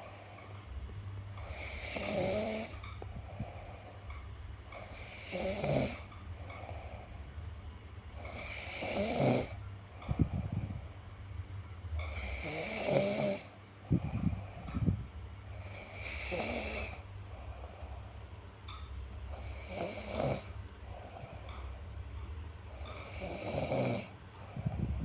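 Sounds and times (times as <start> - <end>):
person snoring: 1.4 - 2.8, 4.8 - 6.1, 8.2 - 9.6, 12.1 - 14.7, 15.5 - 17.0, 19.4 - 20.6, 22.9 - 24.9.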